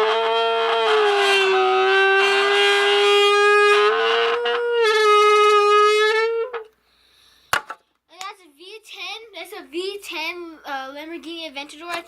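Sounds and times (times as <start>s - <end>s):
buzzing tone from blown soda can: 0.0s - 6.8s.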